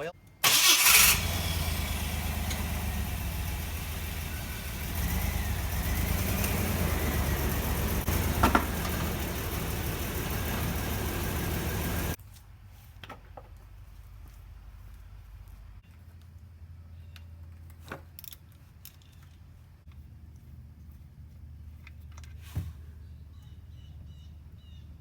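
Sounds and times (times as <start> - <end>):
car engine idling: 0.4 - 12.2.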